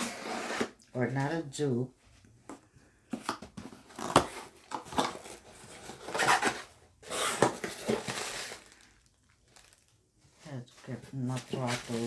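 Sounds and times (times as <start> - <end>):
packaging rustling and scraping: 3.2 - 9.9, 10.7 - 12.0.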